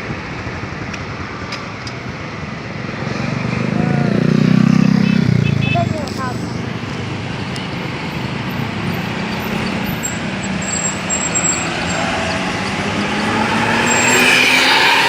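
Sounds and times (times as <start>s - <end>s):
bus engine running: 5.9s - 15.0s
exhaust whoosh: 10.9s - 15.0s.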